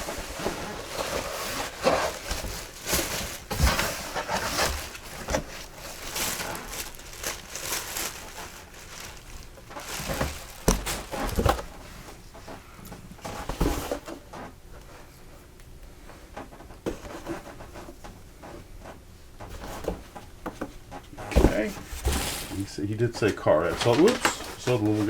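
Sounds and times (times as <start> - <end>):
packaging rustling and crinkling: 0.0 - 12.2, 21.2 - 25.0.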